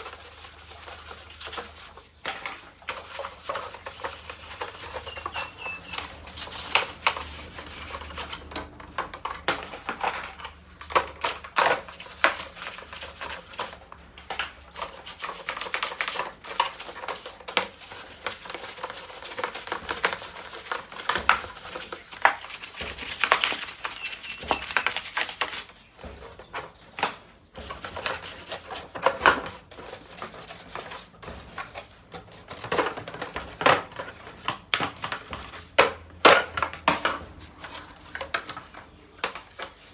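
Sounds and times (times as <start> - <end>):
scrubbing parts: 0.0 - 39.9
clicks and taps of hard objects: 30.8 - 39.9.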